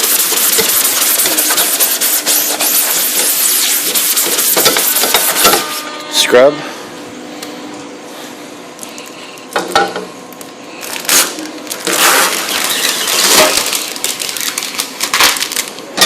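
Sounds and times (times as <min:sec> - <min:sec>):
sponge scrubbing mesh: 0:00.0 - 0:05.4.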